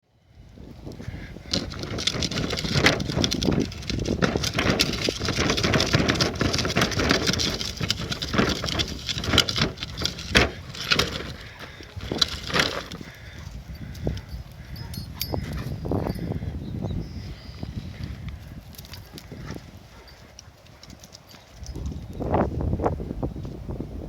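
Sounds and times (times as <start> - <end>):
dog paws scuffling and thumping: 1.5 - 16.2.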